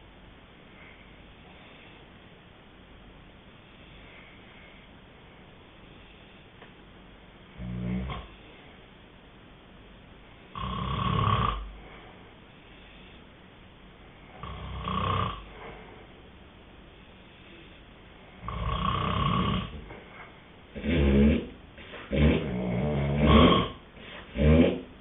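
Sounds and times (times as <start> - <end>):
person snoring: 7.6 - 8.4, 10.5 - 11.9, 14.3 - 15.8, 18.4 - 19.9, 20.8 - 24.9.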